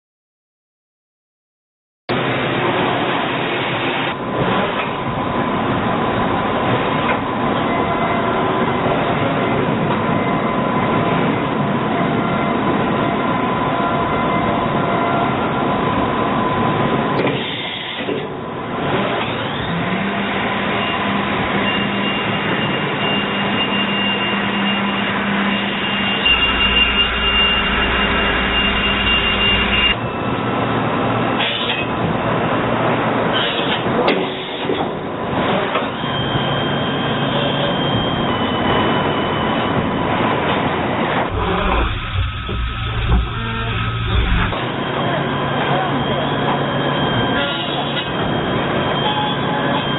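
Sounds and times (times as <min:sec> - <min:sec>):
high machine whine: 0:02.1 - 0:49.9
machining centre running: 0:02.1 - 0:49.9
low hum: 0:24.9 - 0:30.8, 0:41.1 - 0:44.9.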